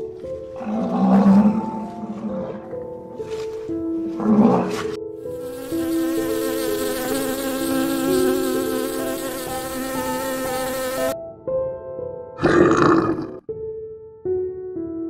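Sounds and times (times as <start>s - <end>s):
insect buzzing: 4.5s - 11.2s.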